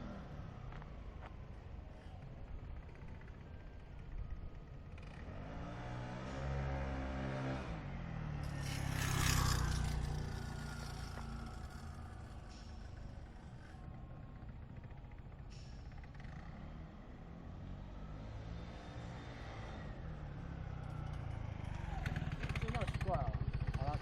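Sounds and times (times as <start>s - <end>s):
scooter engine revving: 8.4s - 12.7s, 21.7s - 24.0s.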